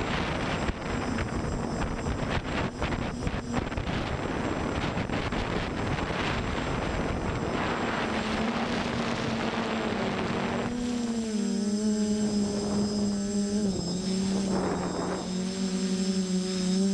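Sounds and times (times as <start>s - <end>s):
quadcopter motors humming: 0.0s - 16.9s
wind noise: 0.0s - 16.9s.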